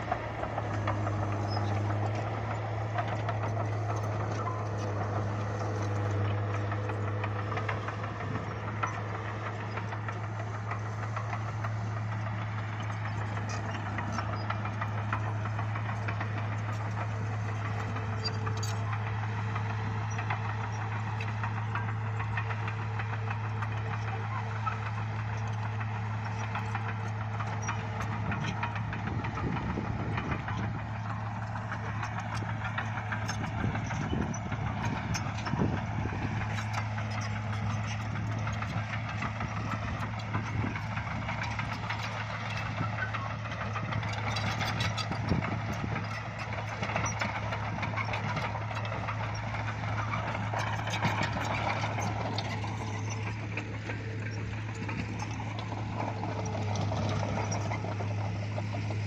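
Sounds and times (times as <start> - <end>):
bulldozer engine running: 0.0 - 59.0.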